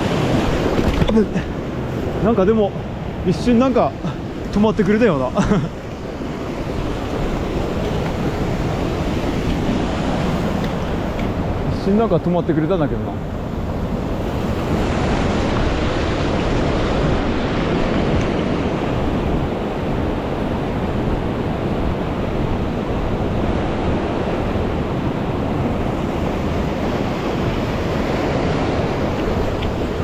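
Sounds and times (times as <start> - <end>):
stream rushing over rocks: 0.0 - 6.2.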